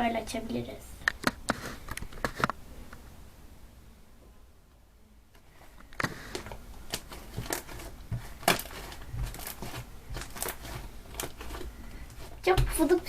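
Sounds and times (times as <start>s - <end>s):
slime popping and crackling: 6.8s - 13.0s.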